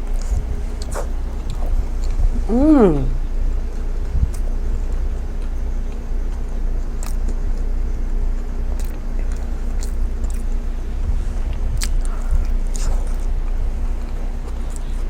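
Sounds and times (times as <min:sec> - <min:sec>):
chewing and biting burger: 0:00.0 - 0:15.0
steady low hum: 0:00.0 - 0:15.0
wet mouth clicks: 0:00.8 - 0:03.3.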